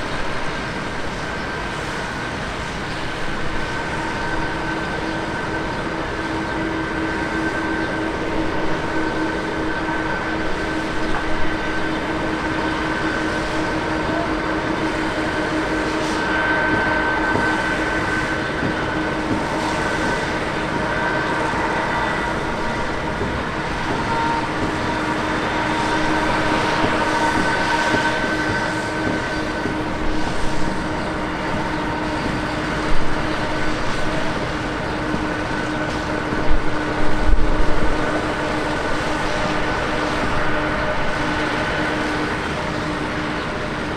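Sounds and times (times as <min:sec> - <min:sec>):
jet engines running with whine: 0:00.0 - 0:43.9.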